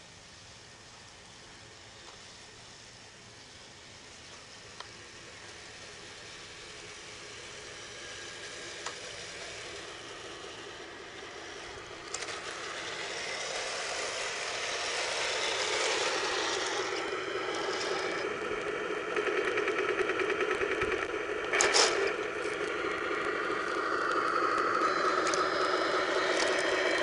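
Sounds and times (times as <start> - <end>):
model tank tracks whirring: 0.0 - 27.0
click: 24.1 - 25.4.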